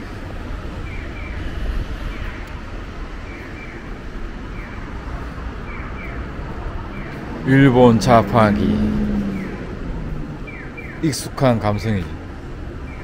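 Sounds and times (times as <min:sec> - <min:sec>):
low rumble of traffic: 0:00.0 - 0:13.0.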